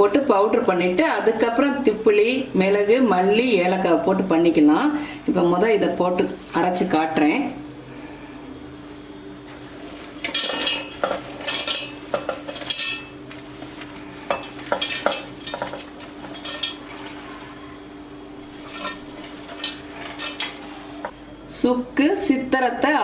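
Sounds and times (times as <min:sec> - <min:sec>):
faint steady hum: 0:00.0 - 0:23.0
metal jar and spoon clinking: 0:10.1 - 0:13.1, 0:14.2 - 0:17.2.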